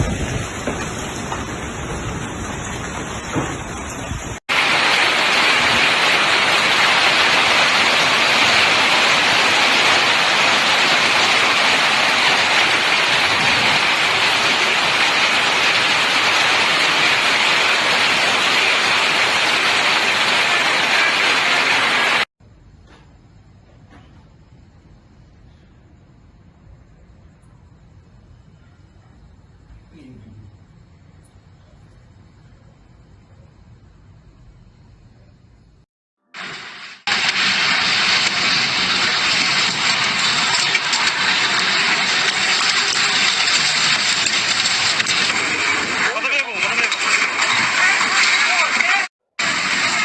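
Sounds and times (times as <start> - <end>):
heavy rain pouring: 0.0 - 22.3, 36.4 - 50.0.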